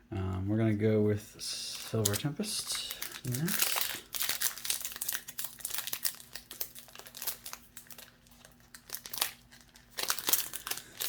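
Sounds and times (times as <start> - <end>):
foil wrapper crinkling: 1.6 - 11.0.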